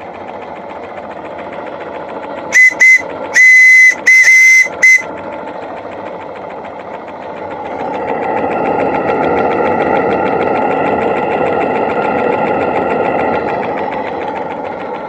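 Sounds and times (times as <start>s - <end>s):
steam whistle blasts: 2.6s - 5.1s.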